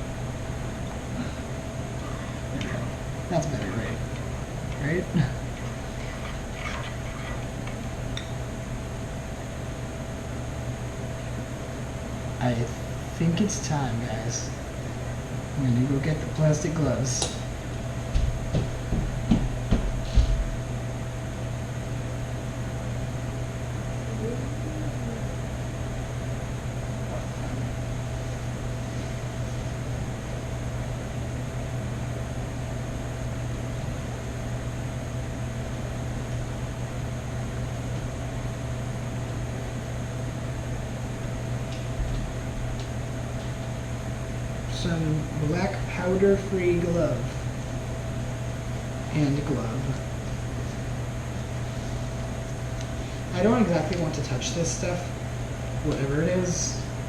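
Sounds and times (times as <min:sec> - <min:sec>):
appliance humming with whine: 0:00.0 - 0:57.0
knocks and bumps: 0:18.1 - 0:20.6.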